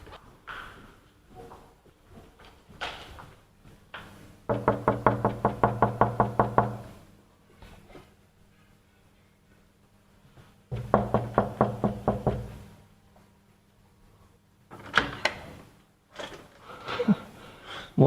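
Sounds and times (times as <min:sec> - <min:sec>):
knuckles knocking on a door: 0:04.5 - 0:06.8, 0:10.7 - 0:12.6.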